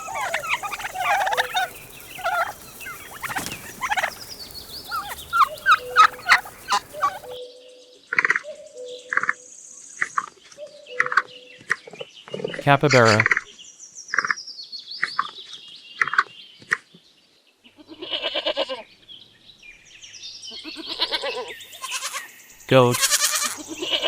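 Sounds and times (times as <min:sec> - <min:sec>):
turkeys gobbling: 0:00.0 - 0:07.4.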